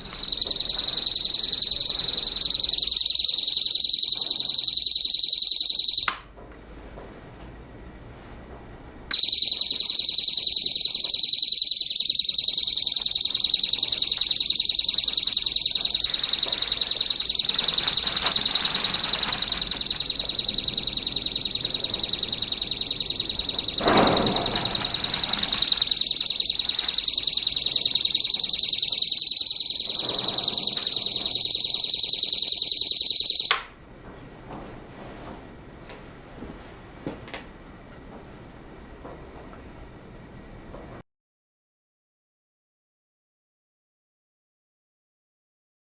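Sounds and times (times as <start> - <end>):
electronic alarm buzzer warbling: 0.0 - 6.1, 9.1 - 33.6.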